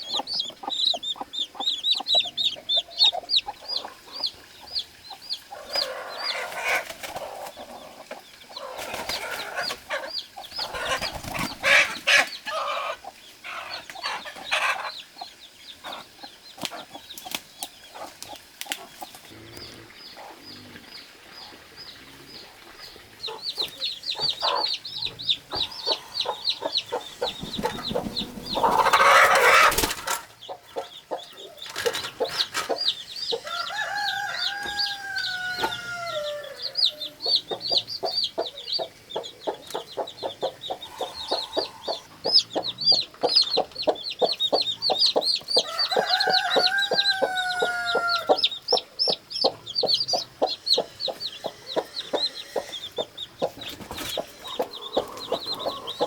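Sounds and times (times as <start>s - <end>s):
chicks peeping: 0.0s - 56.0s
hen clucking: 0.0s - 56.0s
drawn-out falling calls: 17.9s - 56.0s.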